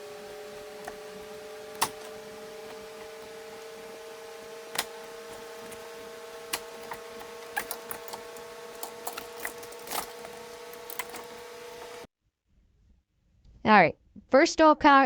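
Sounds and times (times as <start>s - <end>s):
steady hum: 0.0s - 12.1s
plastic clips snapping loose: 0.2s - 3.9s, 4.5s - 12.0s.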